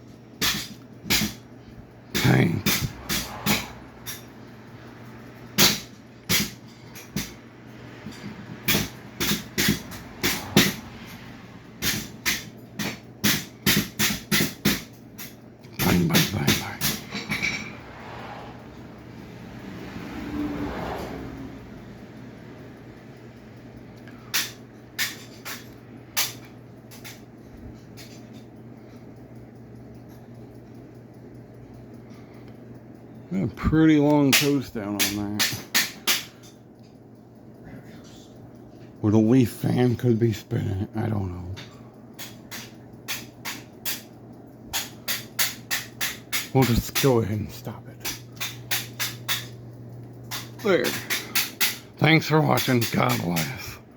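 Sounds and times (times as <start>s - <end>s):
ceiling fan hum: 0.0s - 53.9s
sharp metal bangs: 0.4s - 1.5s, 2.1s - 4.3s, 5.6s - 18.2s, 34.0s - 36.6s, 42.2s - 49.6s, 50.2s - 53.6s.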